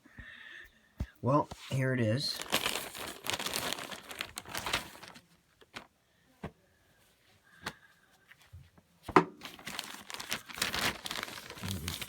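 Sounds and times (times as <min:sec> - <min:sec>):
plastic packaging crinkling: 0:02.2 - 0:05.9, 0:09.4 - 0:12.0.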